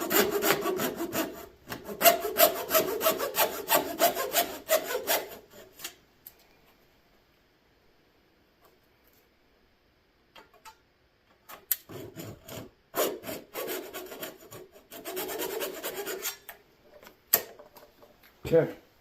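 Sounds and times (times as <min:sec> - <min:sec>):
hacksaw rasping strokes: 0:00.0 - 0:05.9, 0:11.9 - 0:16.4.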